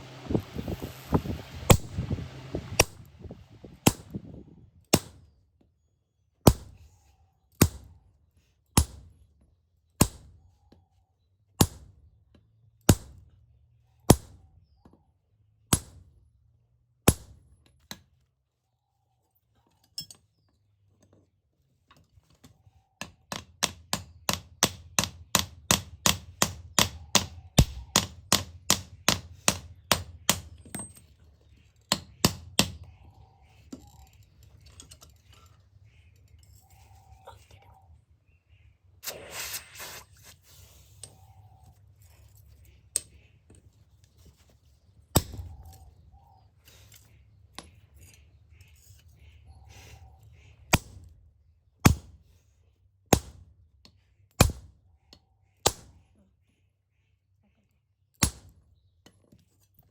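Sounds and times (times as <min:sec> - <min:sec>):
hammer striking iron: 0:24.0 - 0:30.9, 0:51.8 - 0:52.1, 0:53.1 - 0:53.4.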